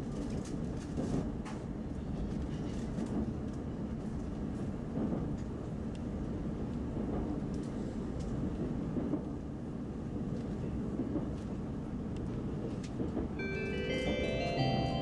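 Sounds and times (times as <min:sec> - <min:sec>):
rising bell-like announcement chime: 0:13.4 - 0:15.0.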